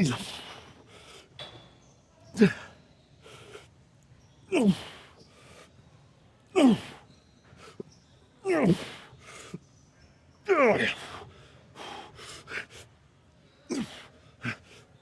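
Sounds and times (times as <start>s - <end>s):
short breaths: 0.1s - 1.5s.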